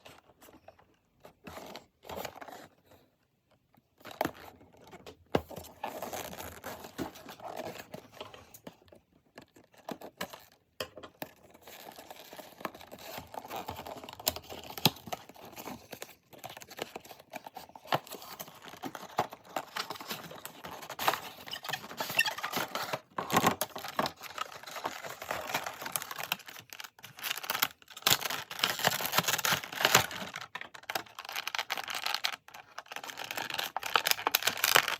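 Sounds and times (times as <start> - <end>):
packaging crinkling and rustling: 0.0 - 34.9
packaging tearing: 11.6 - 34.9.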